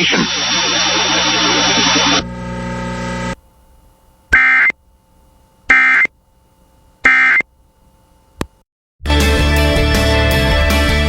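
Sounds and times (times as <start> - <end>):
buzzy two-tone data squawks: 4.3 - 4.8, 5.7 - 6.2, 7.0 - 7.5.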